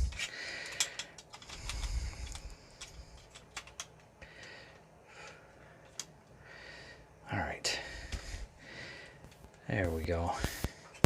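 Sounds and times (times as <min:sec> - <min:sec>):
plastic toy parts clicking: 0:00.1 - 0:04.1.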